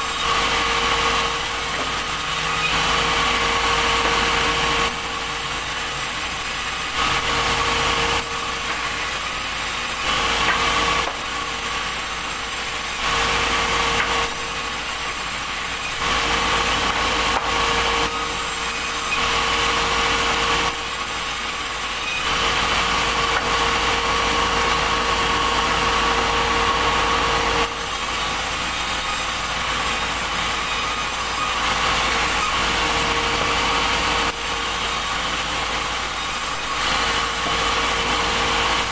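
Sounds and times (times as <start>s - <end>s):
saw cutting wood: 0.0s - 38.9s.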